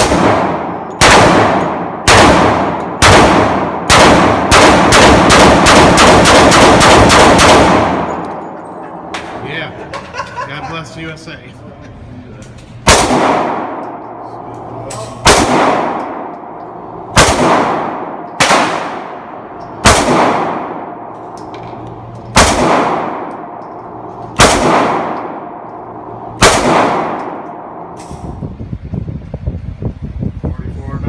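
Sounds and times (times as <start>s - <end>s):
pistol shots echoing: 0.0s - 9.4s, 12.8s - 14.2s, 15.2s - 21.1s, 22.3s - 28.0s.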